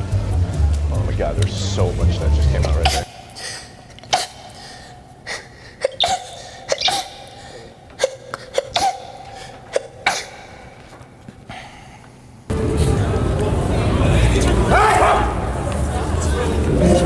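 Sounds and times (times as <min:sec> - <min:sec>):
person sneezing: 0:02.8 - 0:10.8.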